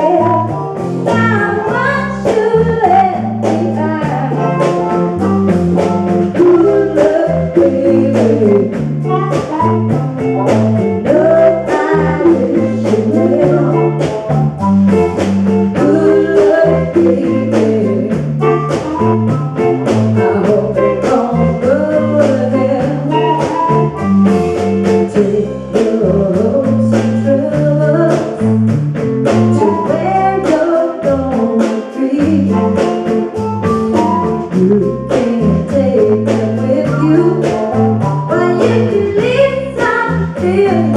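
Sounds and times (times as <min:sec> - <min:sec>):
person singing: 0:00.0 - 0:04.9, 0:06.3 - 0:14.5, 0:15.7 - 0:19.0, 0:19.9 - 0:24.0, 0:29.5 - 0:40.9
amplified guitar: 0:00.0 - 0:40.9
steady drum beat: 0:00.0 - 0:40.9
walking bass line: 0:00.0 - 0:40.9.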